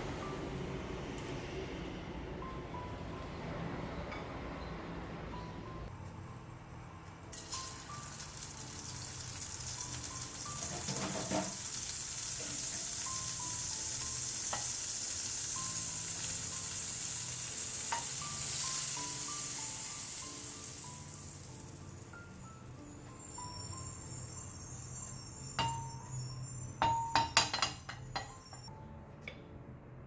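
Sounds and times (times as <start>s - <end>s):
batter sizzling in a pan: 7.3s - 26.0s
plinking background music: 7.3s - 29.6s.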